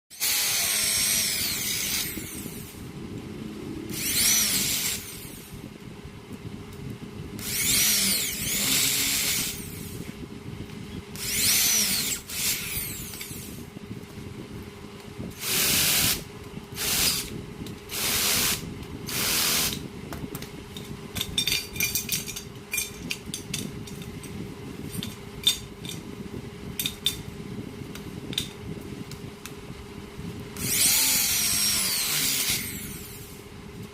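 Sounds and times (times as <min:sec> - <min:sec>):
electric drill boring metal: 0:00.1 - 0:02.8, 0:03.9 - 0:05.5, 0:07.4 - 0:10.0, 0:11.1 - 0:13.6, 0:15.4 - 0:16.2, 0:16.8 - 0:17.3, 0:17.9 - 0:19.8, 0:30.6 - 0:33.4
steady hum: 0:00.1 - 0:33.9.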